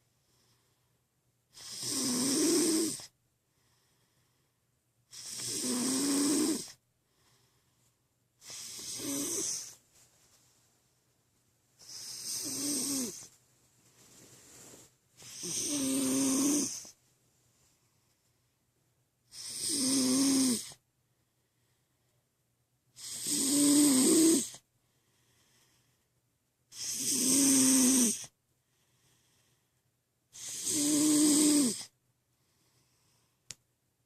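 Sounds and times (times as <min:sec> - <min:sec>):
faint breath: 0:00.1 - 0:01.0, 0:03.5 - 0:04.7, 0:07.0 - 0:10.6, 0:24.8 - 0:26.2, 0:28.6 - 0:29.8, 0:32.3 - 0:33.5
loud snoring: 0:01.5 - 0:03.1, 0:05.1 - 0:06.8, 0:08.4 - 0:09.8, 0:11.8 - 0:13.3, 0:15.2 - 0:17.0, 0:19.3 - 0:20.8, 0:23.0 - 0:24.6, 0:26.7 - 0:28.3, 0:30.4 - 0:31.9.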